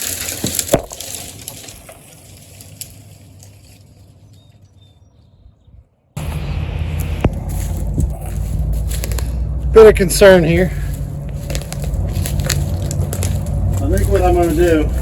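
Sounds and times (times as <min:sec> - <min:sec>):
falling tree crashing through branches: 0:00.0 - 0:04.0
sharp wood crack: 0:00.0 - 0:04.6, 0:06.2 - 0:09.6, 0:10.9 - 0:15.0
low steady rumble: 0:06.2 - 0:15.0.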